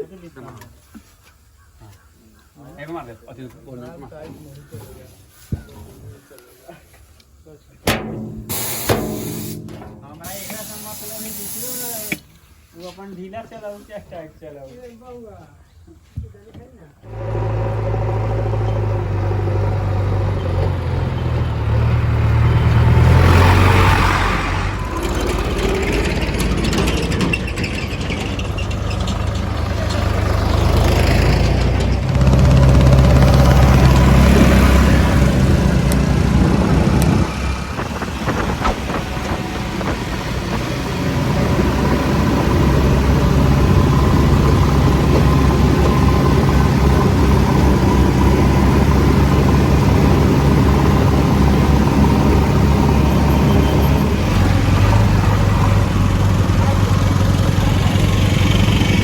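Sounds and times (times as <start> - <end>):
diesel engine revving: 7.9 - 12.2, 17.0 - 59.0
rough noise: 7.9 - 12.8.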